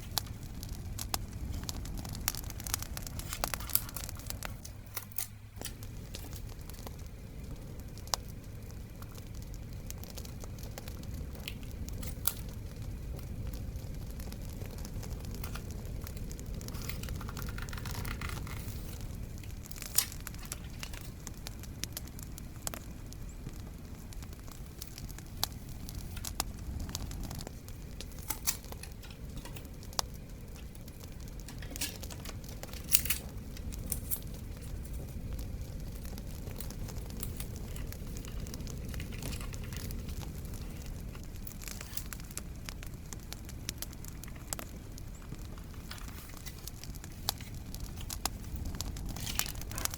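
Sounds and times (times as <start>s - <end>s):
low rumble: 0.0s - 22.4s
crackling bonfire: 0.0s - 49.9s.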